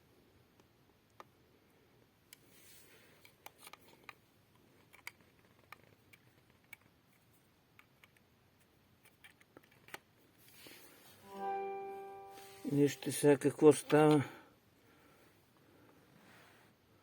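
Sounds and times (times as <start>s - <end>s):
faint clicks and taps: 3.2s - 8.3s.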